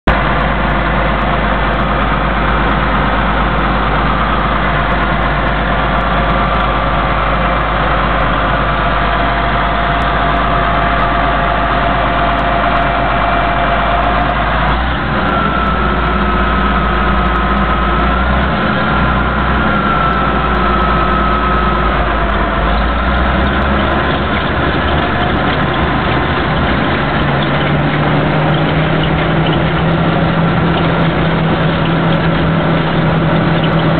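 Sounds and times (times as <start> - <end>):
bulldozer diesel engine running: 0.0 - 33.9
thin whining tone: 10.2 - 33.9.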